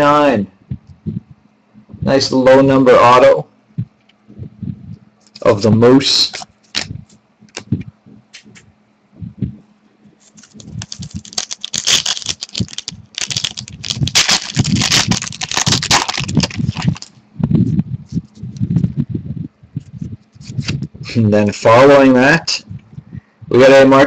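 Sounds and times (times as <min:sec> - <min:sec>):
trading cards rustling and clicking: 0:10.2 - 0:17.1.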